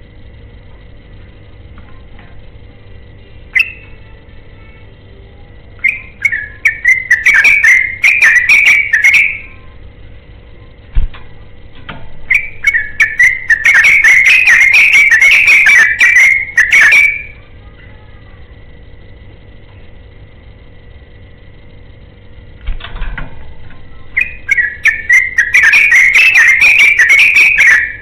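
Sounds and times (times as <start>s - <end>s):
bulbul singing warbling whistles: 3.6s - 4.0s, 5.8s - 9.6s, 12.3s - 17.4s, 24.2s - 28.0s.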